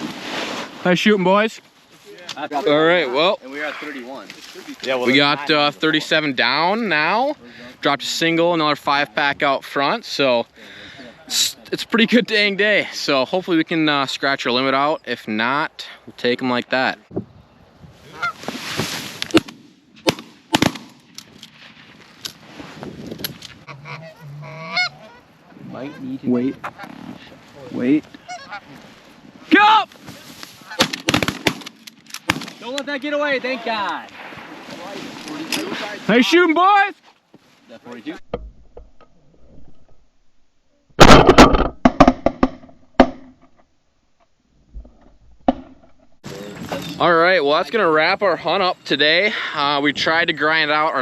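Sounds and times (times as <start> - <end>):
rustling: 0.0 - 5.4, 18.0 - 25.4, 26.5 - 36.4
sharp knocks and clicks: 41.2 - 43.7.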